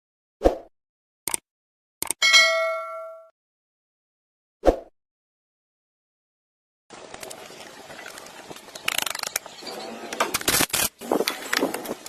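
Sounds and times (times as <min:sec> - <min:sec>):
ringing metallic clang: 0:02.2 - 0:03.3.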